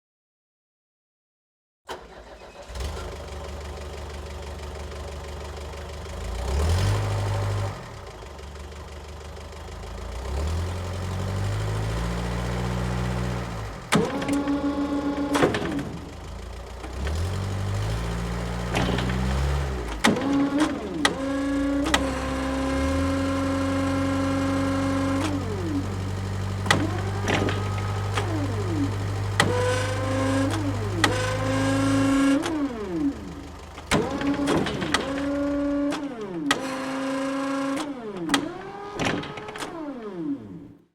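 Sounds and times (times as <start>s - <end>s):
forklift engine revving: 1.9s - 40.9s
clicks and clanks: 13.9s - 17.2s, 18.6s - 22.8s, 26.6s - 32.7s, 33.7s - 40.3s.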